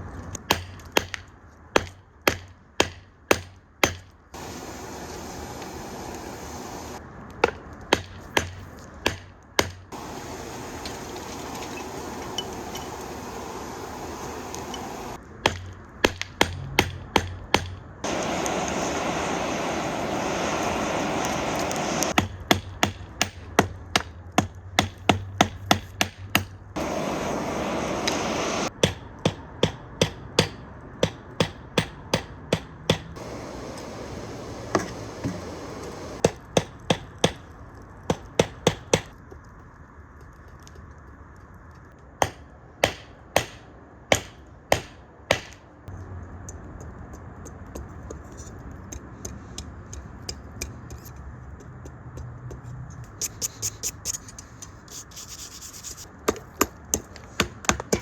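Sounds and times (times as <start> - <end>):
hair dryer blowing air: 4.4 - 7.0, 10.0 - 15.2, 18.0 - 22.2, 26.8 - 28.7, 33.2 - 36.2.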